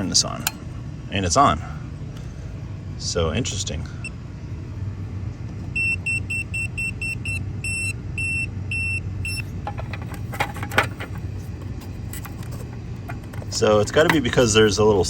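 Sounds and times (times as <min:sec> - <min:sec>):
sharp clicks and handling knocks: 0:00.0 - 0:00.7, 0:09.4 - 0:14.8
low steady hum: 0:00.0 - 0:15.0.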